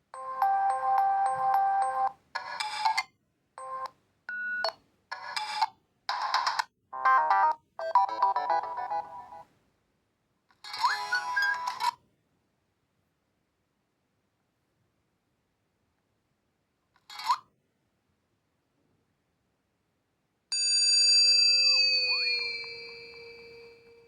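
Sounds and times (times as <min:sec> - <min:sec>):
phone electronic melodies and chimes: 0:00.2 - 0:02.1, 0:21.6 - 0:24.0.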